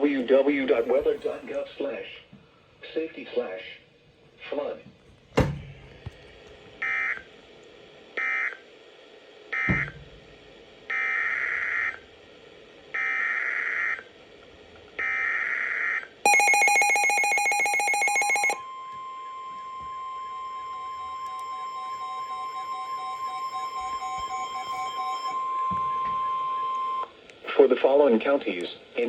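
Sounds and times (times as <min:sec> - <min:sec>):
pulsing electronic alert tone: 0:16.3 - 0:18.6.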